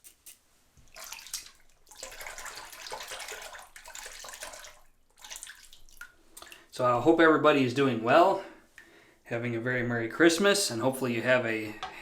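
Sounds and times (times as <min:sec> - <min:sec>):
water running from a tap: 0:00.9 - 0:06.6.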